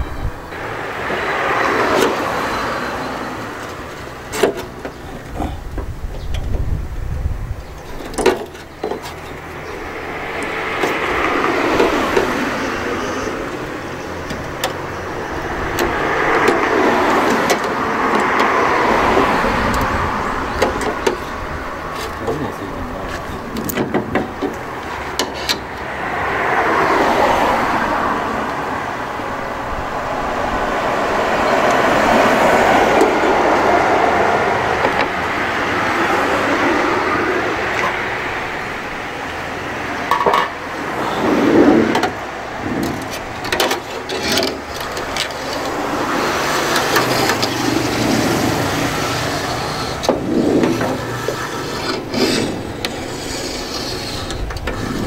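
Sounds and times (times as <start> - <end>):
rasping scraping of adhesive: 42.6 - 55.0.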